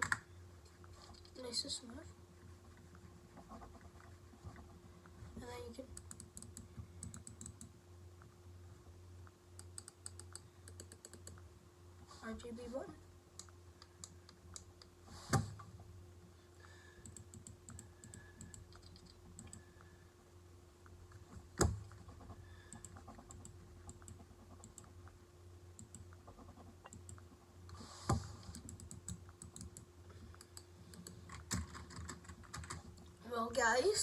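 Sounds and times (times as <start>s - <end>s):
steady low hum: 0.0s - 34.0s
computer mouse buttons clicking: 5.9s - 7.8s, 9.6s - 11.4s, 17.0s - 19.7s, 25.8s - 26.2s, 28.5s - 32.8s.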